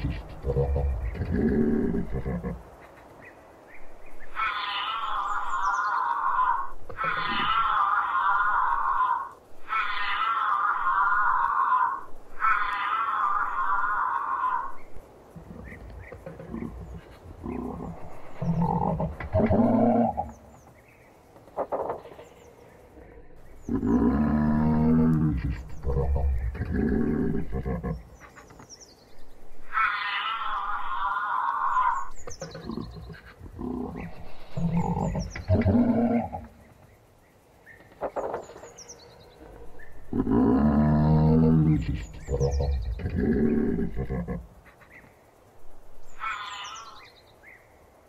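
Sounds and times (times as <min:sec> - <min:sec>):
giraffe grunts and snorts: 0:00.0 - 0:02.7, 0:15.4 - 0:20.5, 0:38.5 - 0:44.6
giraffe high-pitched call: 0:04.3 - 0:14.8, 0:46.1 - 0:47.1.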